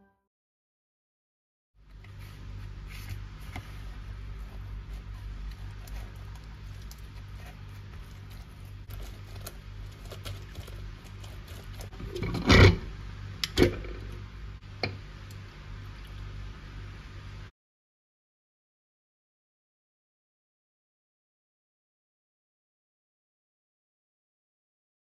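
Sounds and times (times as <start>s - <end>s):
steady low hum: 1.8s - 17.5s.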